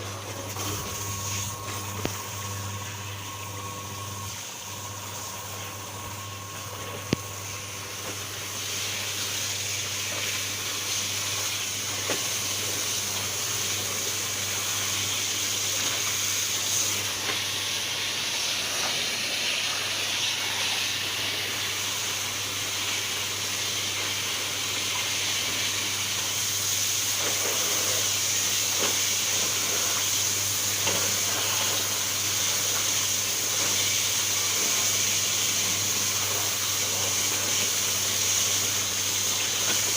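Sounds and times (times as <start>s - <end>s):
washing machine motor hum: 0.0s - 39.9s.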